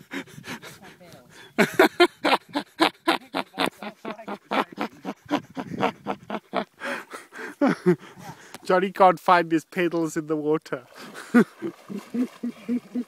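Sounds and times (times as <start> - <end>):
man laughing in breathy bursts: 0.0 - 0.6, 1.4 - 8.5, 11.0 - 13.0.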